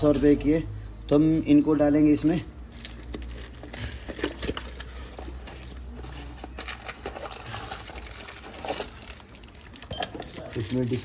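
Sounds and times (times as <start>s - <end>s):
packaging rustling: 2.7s - 11.0s.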